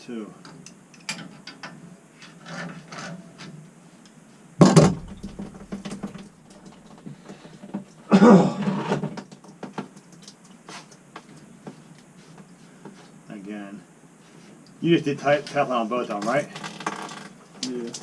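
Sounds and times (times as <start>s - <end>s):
metal scraping: 4.8s - 6.9s.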